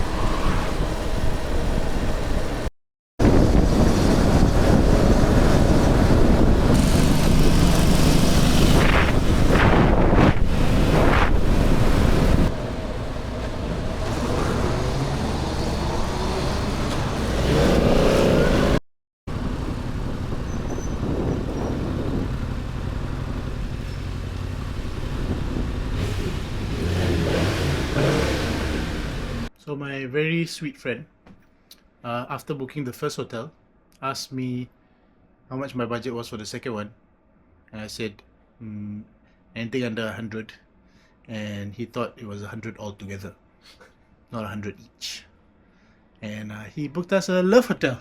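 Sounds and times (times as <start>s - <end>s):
wind noise on microphone: 0.0s - 29.1s
road noise: 0.0s - 29.5s
motorcycle engine: 3.2s - 9.6s, 10.4s - 18.8s, 19.4s - 29.5s.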